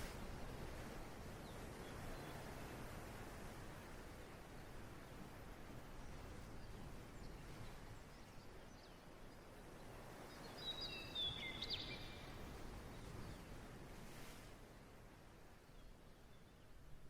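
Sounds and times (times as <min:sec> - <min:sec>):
bird chirping: 0:10.4 - 0:12.3.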